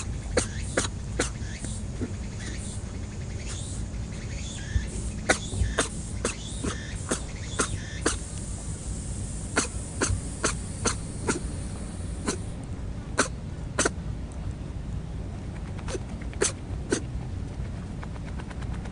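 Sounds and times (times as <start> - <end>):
rabbit sneezing: 0.0 - 2.8, 4.6 - 8.6, 9.3 - 14.0, 15.8 - 17.1
steady low rumble: 0.0 - 18.9.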